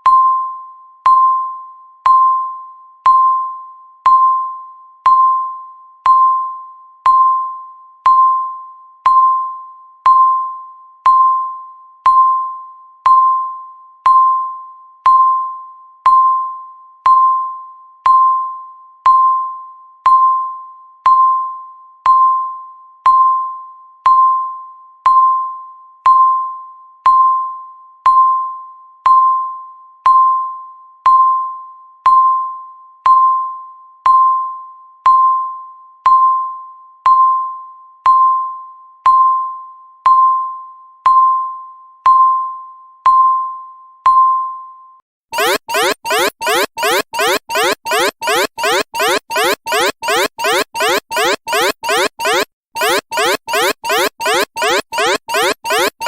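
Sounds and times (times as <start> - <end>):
electronic timer beeps: 45.4 - 56.0.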